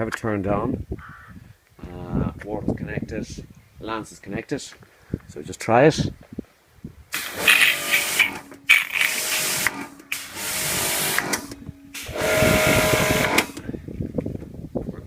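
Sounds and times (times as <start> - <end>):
pressure washer spraying: 7.2 - 13.6
low steady hum: 11.3 - 14.1.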